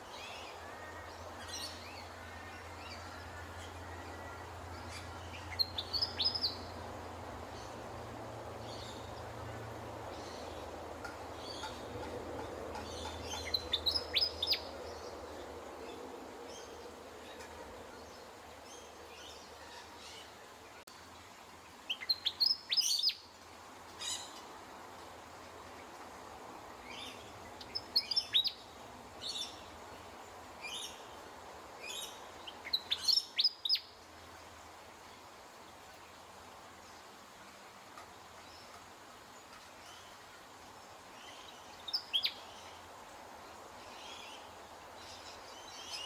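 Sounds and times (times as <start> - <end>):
bird chirping: 0.0 - 6.8, 11.4 - 16.0, 26.9 - 29.7, 41.2 - 42.8.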